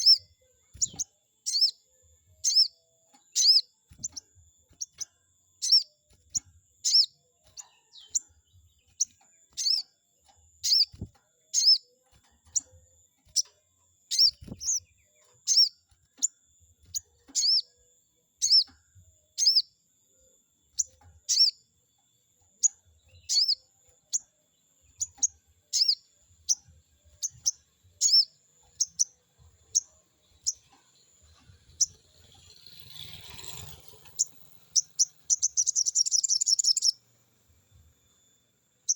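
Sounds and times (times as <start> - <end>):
bird chirping sharply: 0.0 - 1.8, 2.4 - 4.2, 5.6 - 6.0, 6.8 - 8.2, 8.9 - 9.9, 10.6 - 11.9, 14.1 - 16.3, 16.9 - 17.7, 19.4 - 19.7, 20.8 - 21.6, 22.6 - 24.3, 24.9 - 30.7, 31.7 - 37.1
thin steady high tone: 0.0 - 38.9.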